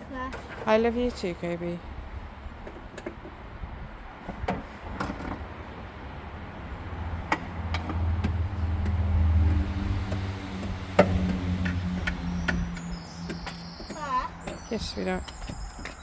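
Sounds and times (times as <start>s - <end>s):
low engine rumble: 0.0s - 16.0s
sharp clicks and knocks: 7.3s - 16.0s.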